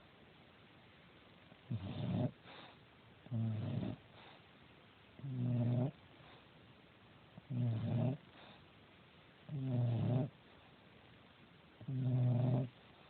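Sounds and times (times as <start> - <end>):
dog snoring: 1.7 - 4.4, 5.2 - 6.4, 7.4 - 8.6, 9.4 - 10.4, 11.8 - 12.8.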